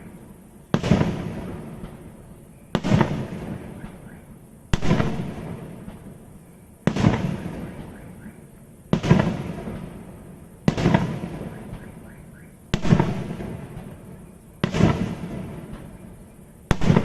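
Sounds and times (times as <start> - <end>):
fireworks bangs with rumbling echo: 0.0 - 17.0.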